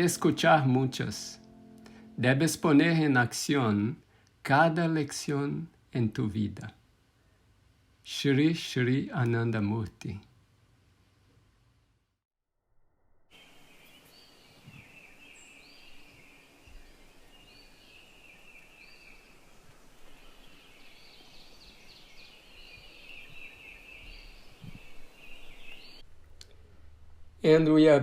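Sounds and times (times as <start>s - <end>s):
steady high chirring: 0.0s - 3.9s.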